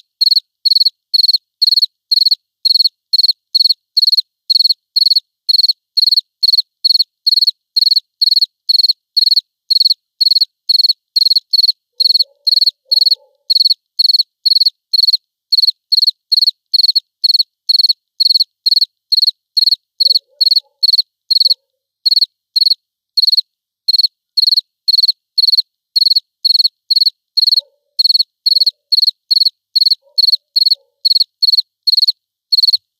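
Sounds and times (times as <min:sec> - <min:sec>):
cricket chirping: 0:00.0 - 0:32.8.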